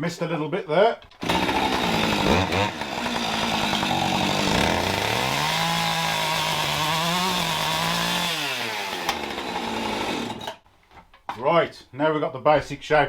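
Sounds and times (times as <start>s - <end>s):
chainsaw cutting wood: 1.2s - 10.6s.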